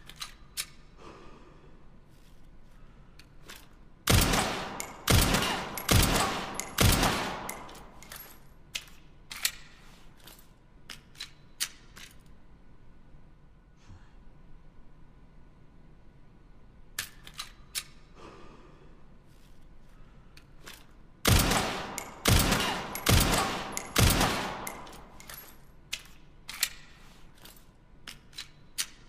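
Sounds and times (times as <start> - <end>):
pistol shots with echo: 4.1 - 7.9, 21.2 - 25.2.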